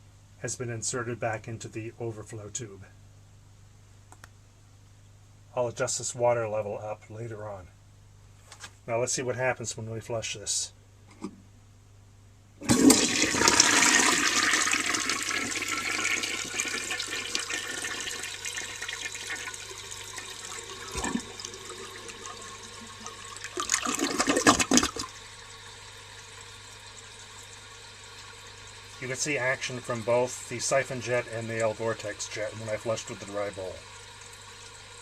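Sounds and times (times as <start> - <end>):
toilet flushing water rush: 12.6 - 35.0
steady water hiss: 12.9 - 35.0.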